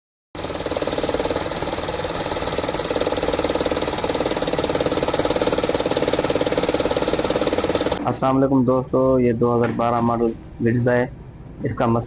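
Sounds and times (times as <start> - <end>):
misfiring engine idling: 0.4 - 8.0.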